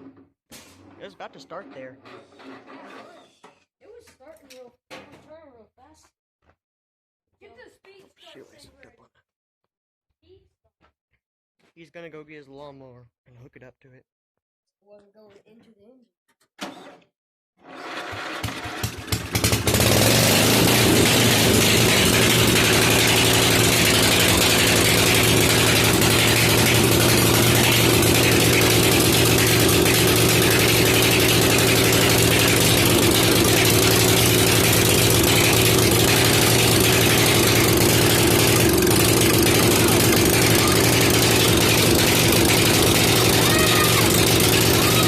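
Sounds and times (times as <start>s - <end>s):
mower engine starting and running: 17.6s - 45.0s.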